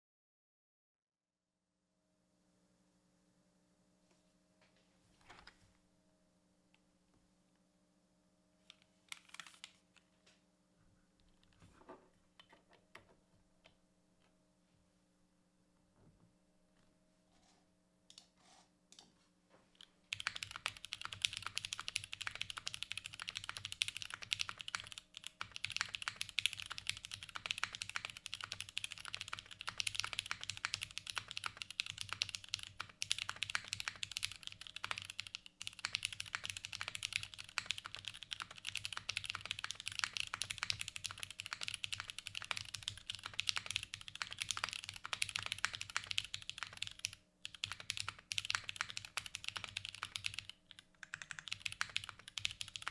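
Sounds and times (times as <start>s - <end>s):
fast mechanical keyboard typing: 20.1s - 52.9s.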